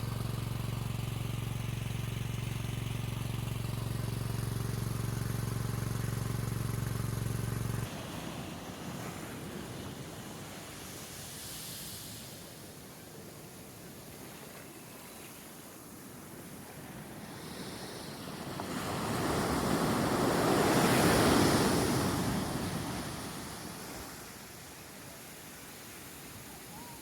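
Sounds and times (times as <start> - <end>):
motor humming: 0.0 - 7.9.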